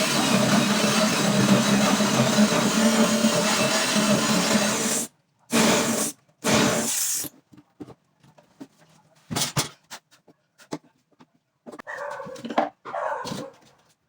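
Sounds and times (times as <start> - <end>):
power tool motor bursts: 0.0 - 7.3.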